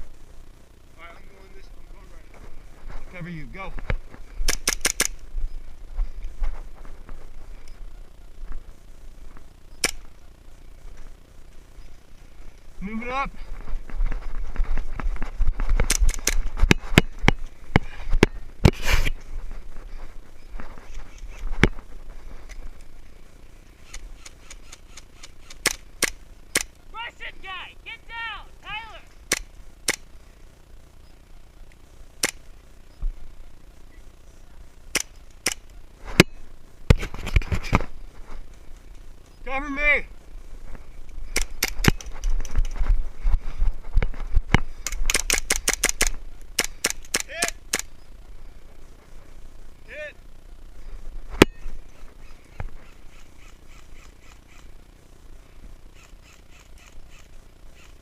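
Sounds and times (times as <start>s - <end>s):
airsoft gun shots: 4.4s - 5.2s, 23.9s - 26.8s, 44.8s - 47.9s.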